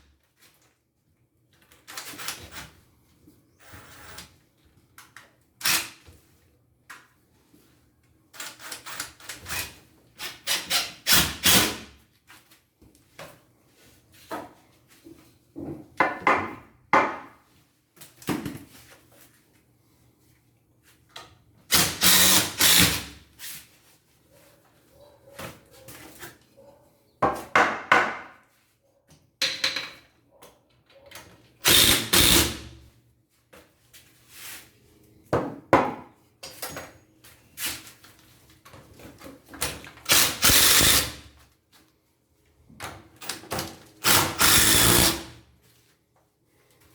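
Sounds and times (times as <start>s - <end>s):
power drill running: 21.8s - 23.0s, 31.7s - 32.6s, 40.1s - 41.2s, 44.0s - 45.3s.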